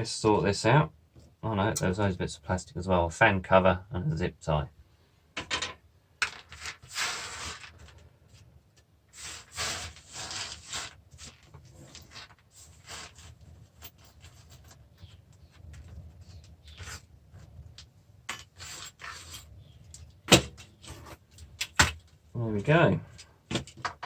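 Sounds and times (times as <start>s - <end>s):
scraping and rubbing of parts: 5.4s - 22.2s.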